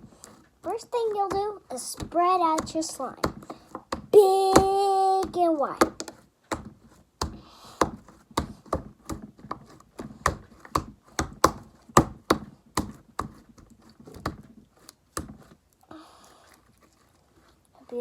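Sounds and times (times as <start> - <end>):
hands slapping slime on table: 2.0 - 13.4.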